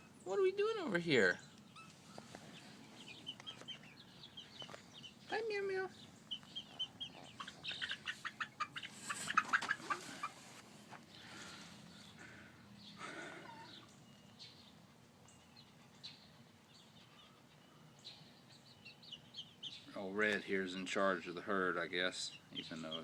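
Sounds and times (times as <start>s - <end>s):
hens clucking: 1.2s - 11.0s.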